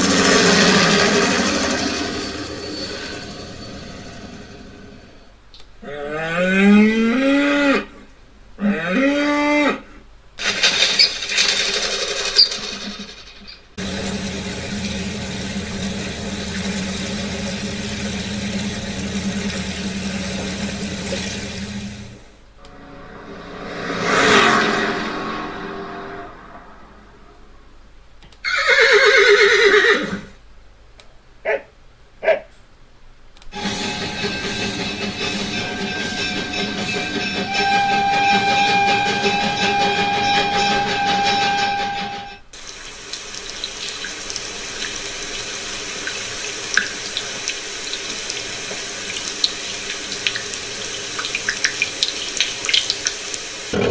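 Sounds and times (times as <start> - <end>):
rough rattling noise with clicks: 10.4 - 13.8
horse neighing: 28.4 - 30.3.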